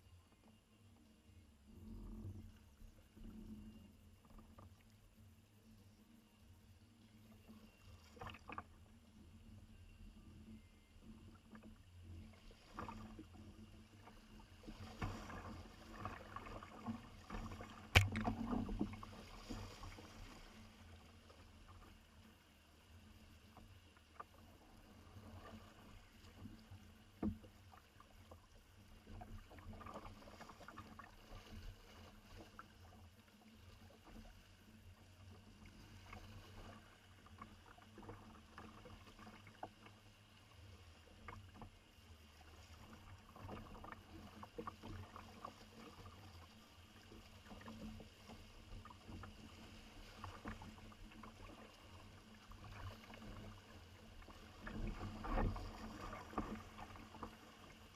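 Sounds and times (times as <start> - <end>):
soft paddle splashes: 12.4 - 21.8, 23.6 - 57.9.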